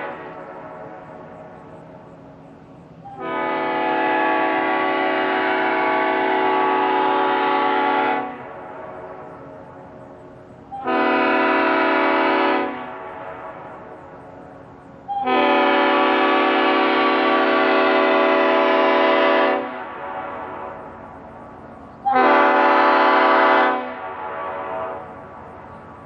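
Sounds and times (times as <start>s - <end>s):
air horn chord blasts: 3.1s - 8.5s, 10.8s - 13.6s, 15.1s - 20.9s, 22.1s - 25.2s.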